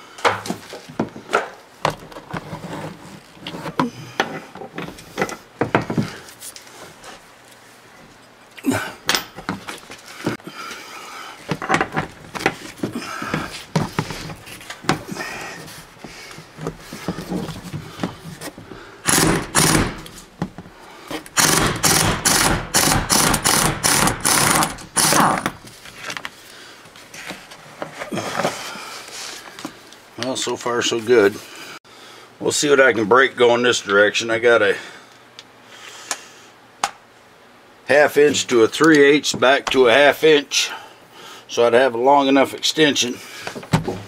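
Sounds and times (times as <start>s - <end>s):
impact wrench hammering: 19.0s - 20.2s, 21.4s - 25.6s.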